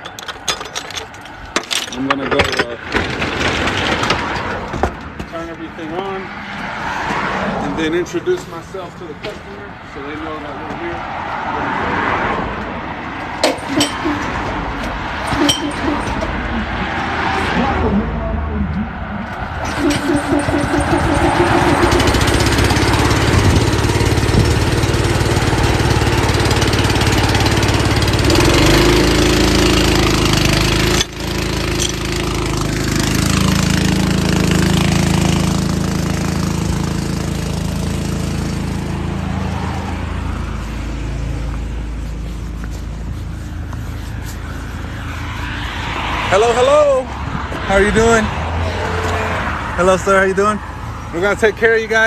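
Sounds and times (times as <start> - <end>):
vehicle engines running: 0.0 - 52.0.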